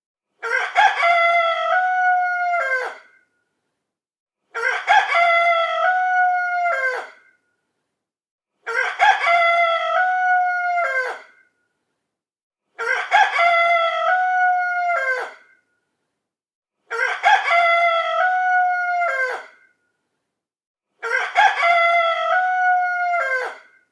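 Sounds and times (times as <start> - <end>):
rooster crowing: 0.4 - 3.1, 4.6 - 7.1, 8.7 - 11.2, 12.8 - 15.4, 17.0 - 19.5, 21.1 - 23.7.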